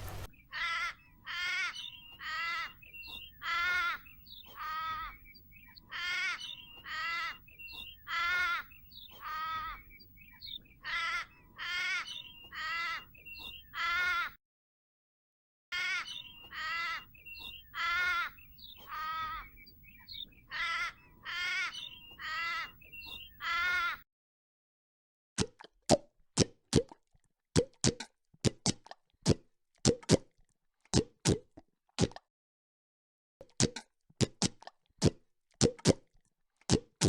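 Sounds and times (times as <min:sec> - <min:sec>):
young animal calling: 0:00.0 - 0:14.3, 0:15.7 - 0:24.0.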